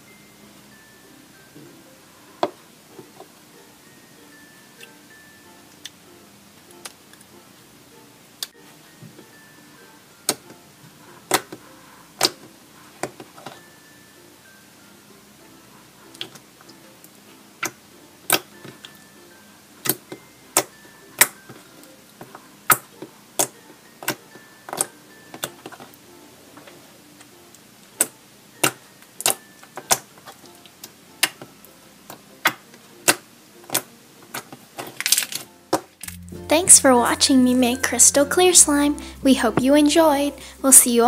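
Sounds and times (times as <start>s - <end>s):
faint background music: 0.0s - 41.0s
slime squishing and popping: 22.7s - 25.5s, 28.0s - 30.0s.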